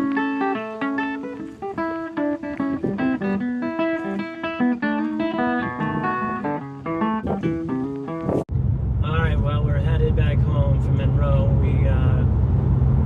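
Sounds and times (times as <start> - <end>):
plucked guitar playing: 0.0 - 8.5.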